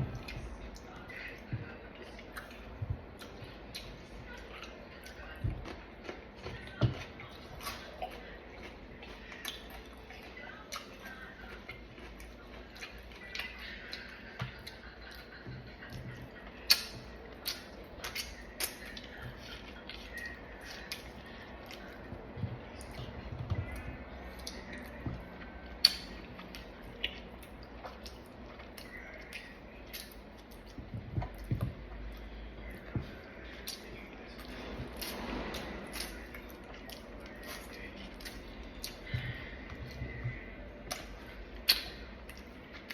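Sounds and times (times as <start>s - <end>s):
person chewing fruit: 0.0s - 42.9s
soft low thumps: 30.7s - 32.0s.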